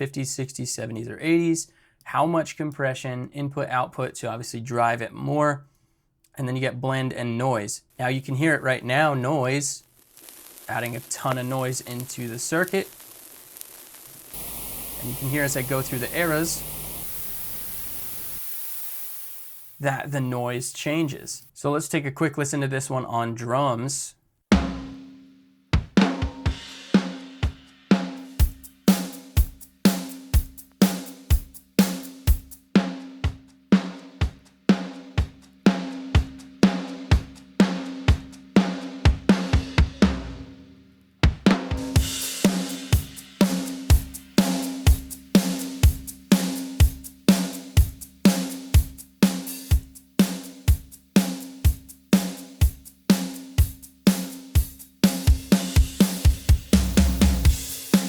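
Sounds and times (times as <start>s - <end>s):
rock drum beat: 10.6s - 12.9s, 14.3s - 17.6s, 24.5s - 58.0s
cymbal crashes: 14.4s - 19.8s, 55.1s - 58.0s.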